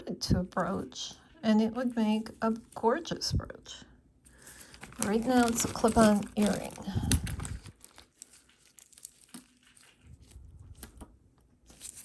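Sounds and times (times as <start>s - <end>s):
bag crinkling: 4.3s - 10.4s, 11.6s - 12.0s.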